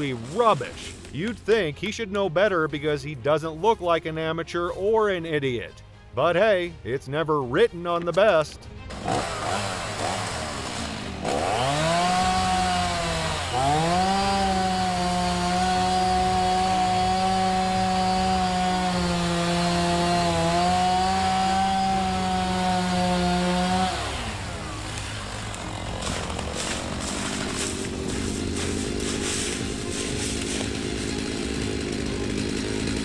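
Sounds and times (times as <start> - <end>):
chainsaw engine revving: 0.0 - 1.3, 8.9 - 33.0.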